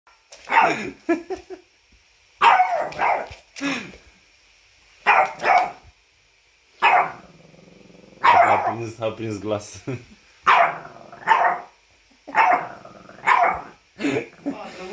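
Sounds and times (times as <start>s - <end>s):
dog barking and whining: 0.4s - 0.9s, 2.4s - 3.4s, 5.0s - 5.9s, 6.8s - 7.4s, 8.1s - 8.9s, 10.4s - 13.8s.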